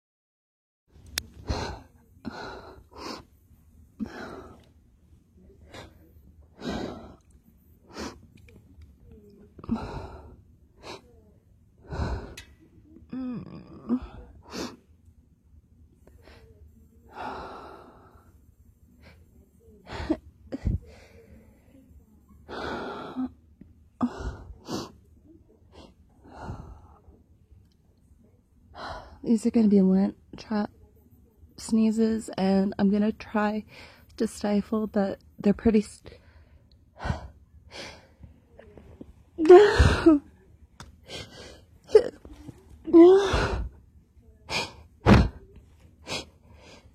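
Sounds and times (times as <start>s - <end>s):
quiet breathing: 0.9s - 15.1s, 15.8s - 29.3s, 33.6s - 34.3s, 36.0s - 46.9s.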